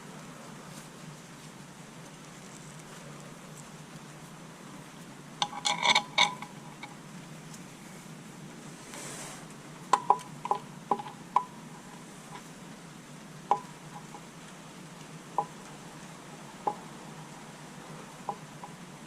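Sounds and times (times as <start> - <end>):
metal tools clinking: 5.4 - 6.9
brief hiss: 8.8 - 9.6.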